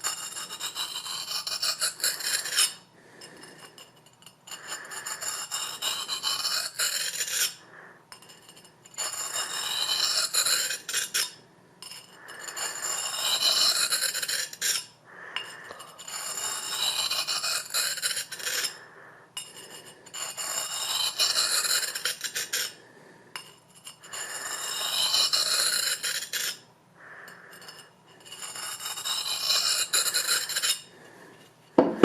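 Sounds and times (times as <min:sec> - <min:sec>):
knife blade scraping on sharpening stone: 0:00.0 - 0:22.8, 0:23.4 - 0:32.0.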